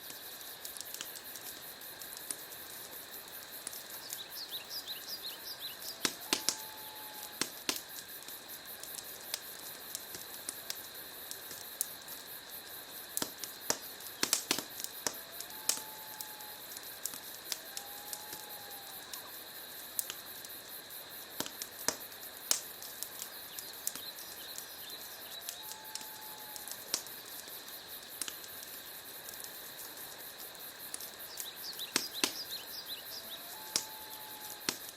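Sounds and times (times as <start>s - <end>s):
wood fire crackling and popping: 0.0s - 34.9s
whistling chirps: 31.4s - 34.6s.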